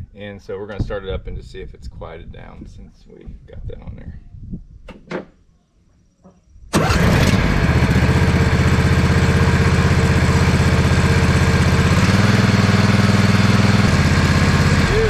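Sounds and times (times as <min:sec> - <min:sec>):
mower engine starting and running: 0:06.7 - 0:15.0.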